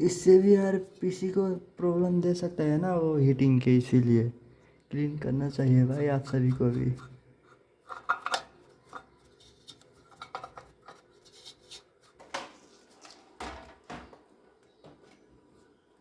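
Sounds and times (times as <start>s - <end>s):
hands handling computer parts: 7.8s - 15.3s.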